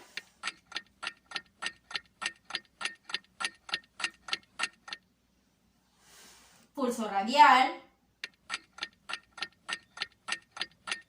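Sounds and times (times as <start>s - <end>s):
clock ticking: 0.0s - 5.1s, 8.2s - 11.0s.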